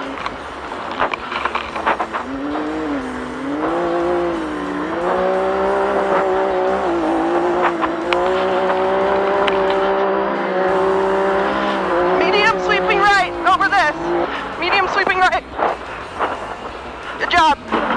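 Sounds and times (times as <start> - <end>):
off-road vehicle engine revving: 0.0 - 17.9.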